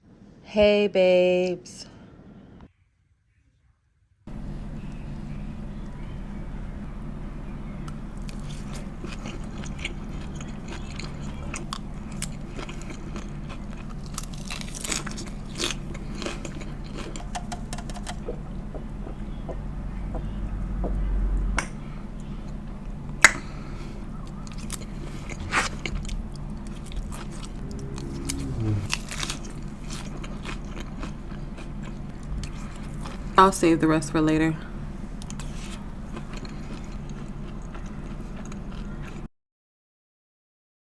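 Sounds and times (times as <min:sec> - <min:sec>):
low rumble: 0:04.3 - 0:38.0
person chewing food: 0:07.8 - 0:33.5, 0:34.6 - 0:39.3
crisp mouth clicks and crunches: 0:08.2 - 0:18.4, 0:23.2 - 0:33.3, 0:35.2 - 0:39.3.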